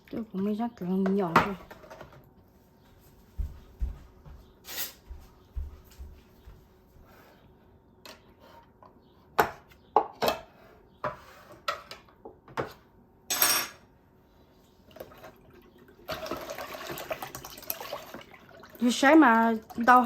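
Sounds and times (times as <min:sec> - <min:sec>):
dishes clinking: 0:13.3 - 0:13.8
water running: 0:14.9 - 0:20.0.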